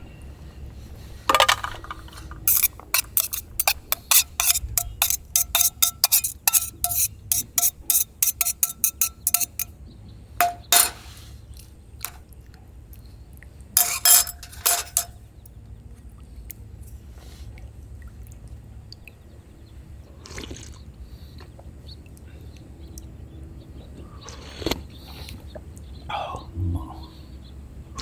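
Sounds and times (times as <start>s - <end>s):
tableware clinking: 1.3s - 9.7s, 10.4s - 11.1s, 13.8s - 15.2s.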